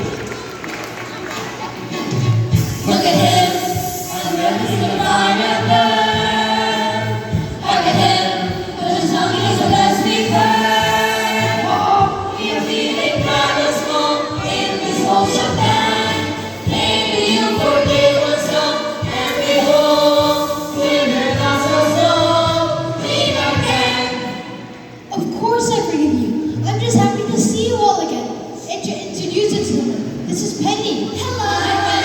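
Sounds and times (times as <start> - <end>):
chorus singing: 1.3 - 25.2, 31.1 - 32.0.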